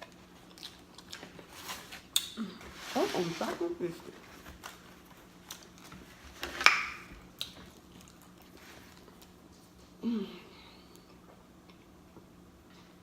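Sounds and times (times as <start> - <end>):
quiet chewing: 0.0 - 2.6, 4.2 - 10.0.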